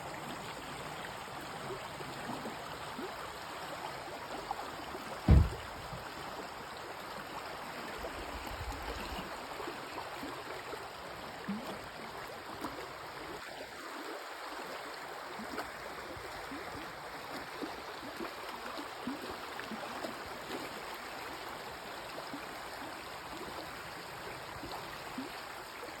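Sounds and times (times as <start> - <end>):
stream flowing over stones: 0.0 - 26.0
water bubbling and gurgling: 7.1 - 26.0.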